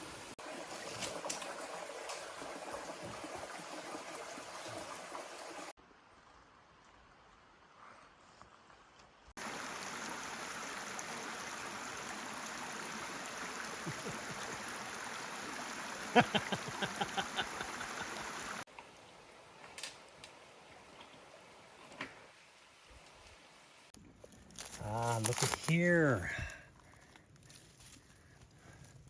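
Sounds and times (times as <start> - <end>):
creek water running: 0.0 - 5.8, 9.4 - 26.6.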